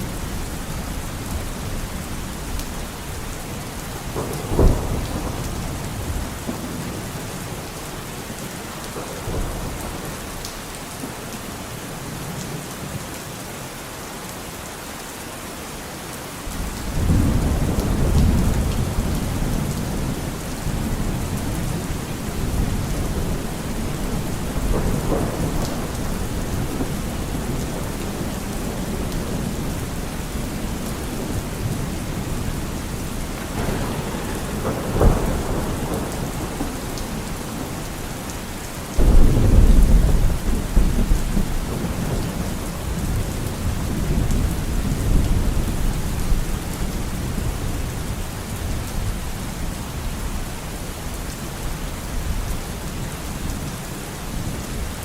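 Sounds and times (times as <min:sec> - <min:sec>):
thunder rumbling: 0:00.0 - 0:07.8, 0:16.5 - 0:47.9
heavy rain hissing: 0:15.2 - 0:55.0.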